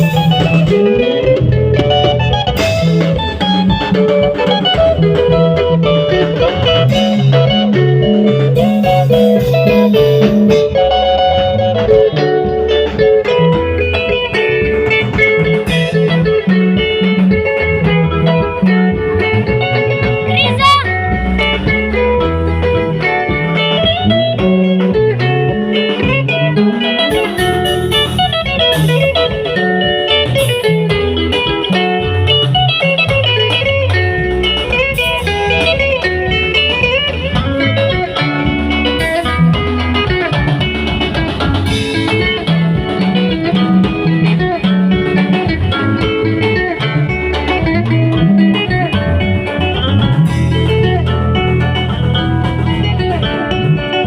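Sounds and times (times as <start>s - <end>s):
bass guitar: 0.0s - 54.0s
blues electric guitar: 0.0s - 54.0s.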